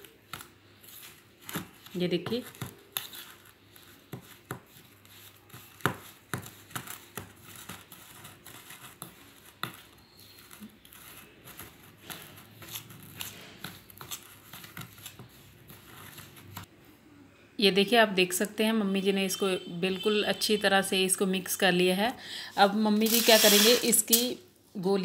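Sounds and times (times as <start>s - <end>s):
utensil scraping a bowl: 0.8s - 16.7s, 23.0s - 24.3s.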